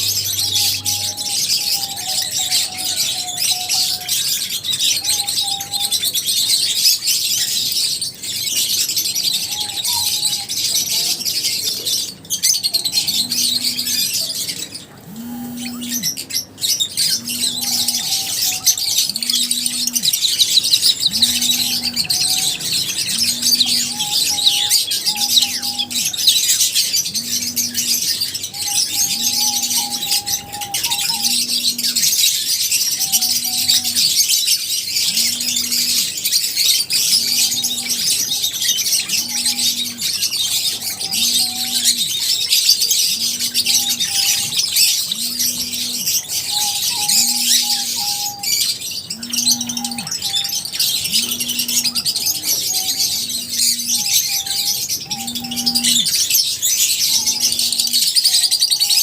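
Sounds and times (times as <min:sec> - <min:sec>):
lovebirds chirping and chattering: 0:00.0 - 0:59.0
low pulsing tone: 0:15.0 - 0:16.4, 0:17.1 - 0:20.2, 0:20.9 - 0:26.2, 0:27.1 - 0:32.2, 0:33.1 - 0:34.1, 0:35.1 - 0:36.2, 0:37.0 - 0:40.2, 0:40.8 - 0:42.2, 0:43.1 - 0:48.5, 0:49.2 - 0:56.2.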